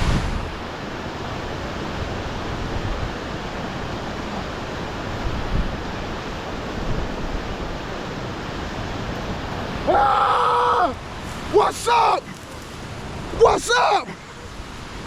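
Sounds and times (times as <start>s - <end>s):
steady rushing noise: 0.0s - 10.2s, 10.8s - 15.0s.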